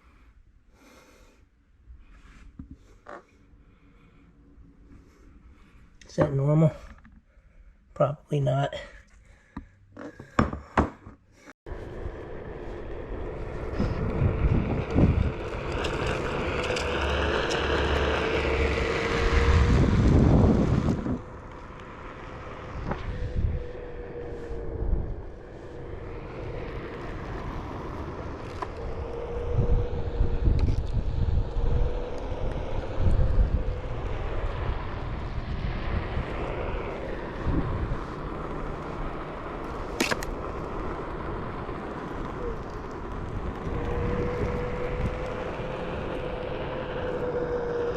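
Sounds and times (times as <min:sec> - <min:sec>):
wind on microphone: 0:11.7 - 0:41.5, 0:42.4 - 0:47.9
vehicle passing: 0:11.7 - 0:47.9.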